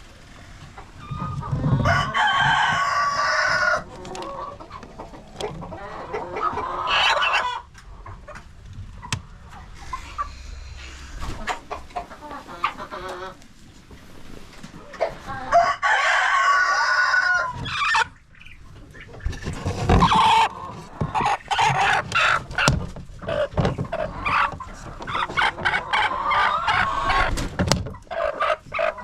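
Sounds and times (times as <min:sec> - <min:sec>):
chickens clucking: 0:00.0 - 0:29.0
rooster crowing: 0:01.8 - 0:03.8, 0:15.5 - 0:17.6.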